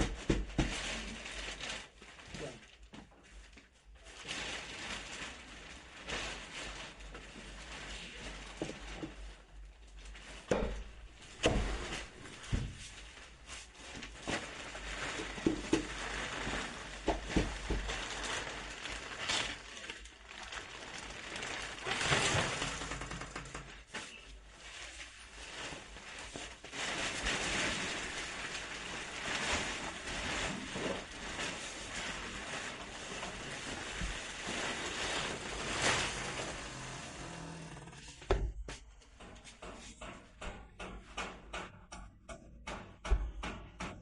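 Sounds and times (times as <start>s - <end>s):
rustling: 0.0s - 40.1s
sharp knocks and clicks: 38.2s - 44.0s.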